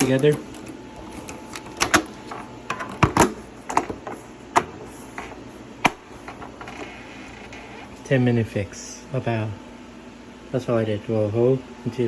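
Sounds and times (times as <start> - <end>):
plastic microwave door clicks: 1.2 - 6.3.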